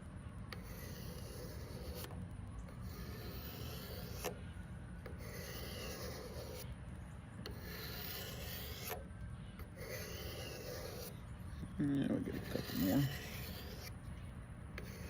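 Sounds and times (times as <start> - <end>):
knife rasping on sharpener rods: 0.5 - 4.4, 5.0 - 6.7, 7.4 - 11.2, 11.8 - 14.0, 14.8 - 15.0.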